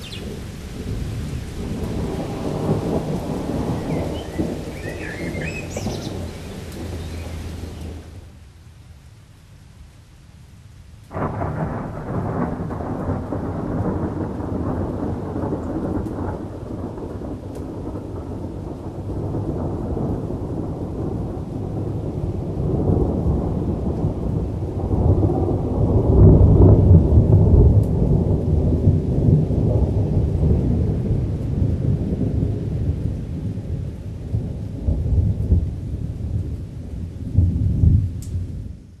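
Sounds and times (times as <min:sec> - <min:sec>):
thunder crack: 0:00.0 - 0:08.1, 0:11.1 - 0:21.9, 0:22.6 - 0:33.0
rolling thunder rumble: 0:00.0 - 0:08.3, 0:11.1 - 0:39.0.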